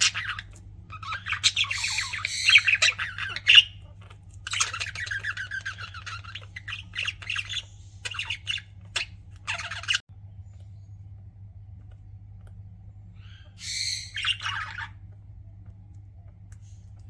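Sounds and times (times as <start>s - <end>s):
budgerigars chirping: 0.0s - 10.0s, 13.2s - 15.0s
steady low hum: 0.0s - 17.0s.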